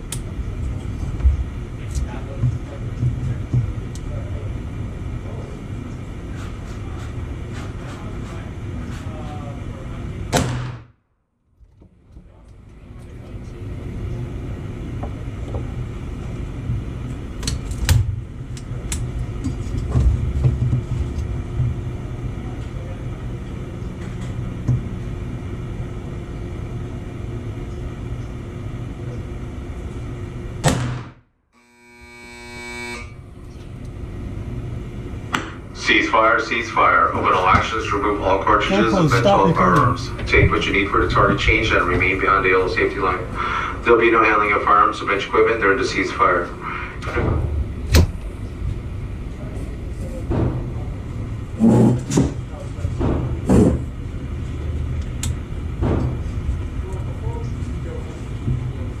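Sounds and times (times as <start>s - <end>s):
low outdoor rumble: 0.0s - 10.8s, 12.0s - 31.0s, 33.2s - 59.0s
gunshot cracks: 10.3s - 10.9s, 30.6s - 31.2s.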